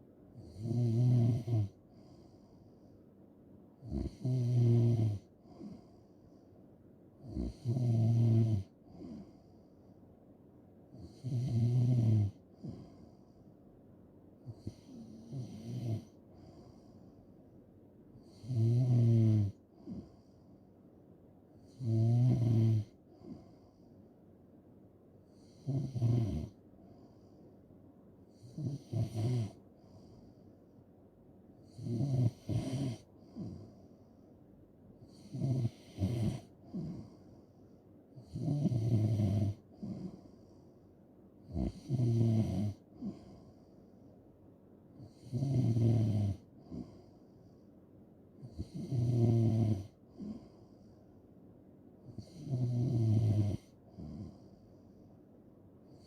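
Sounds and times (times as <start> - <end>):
person snoring: 0.4 - 1.8, 18.2 - 20.1, 21.7 - 22.9, 25.4 - 26.6, 28.4 - 29.6, 31.7 - 33.7, 35.1 - 37.2, 38.2 - 40.2, 41.5 - 43.4, 45.0 - 47.0, 48.4 - 50.5, 52.2 - 54.4.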